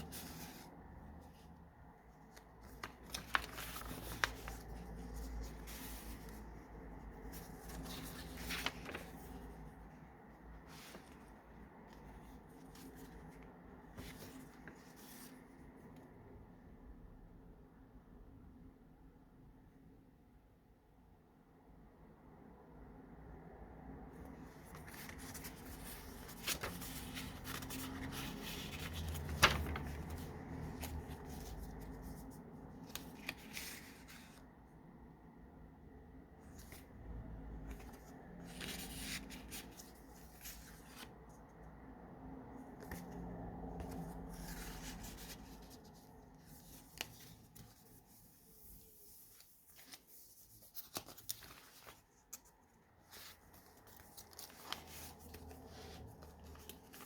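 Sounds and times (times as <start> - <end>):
paper pages rustling: 0.0 - 15.9, 24.2 - 34.6, 36.4 - 41.8, 42.4 - 57.0.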